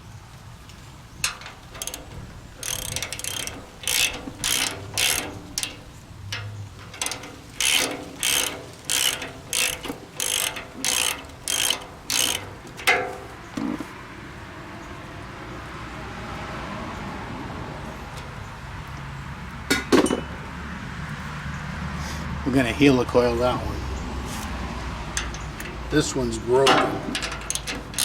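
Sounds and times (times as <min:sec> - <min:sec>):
socket ratchet wrench clicking: 0:01.2 - 0:05.9, 0:06.8 - 0:13.0, 0:27.1 - 0:28.0.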